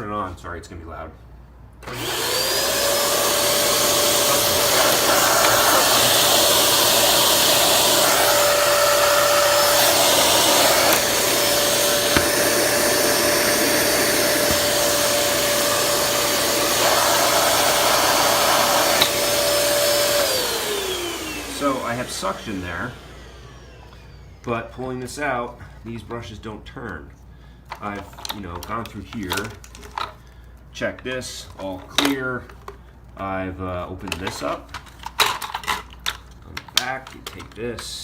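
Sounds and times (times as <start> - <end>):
vacuum cleaner motor whine: 1.8 - 24.7.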